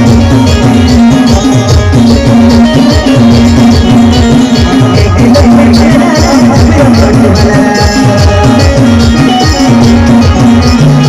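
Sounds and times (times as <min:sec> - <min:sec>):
fast driving drum beat: 0:00.0 - 0:11.0
repeating melody line: 0:00.0 - 0:11.0.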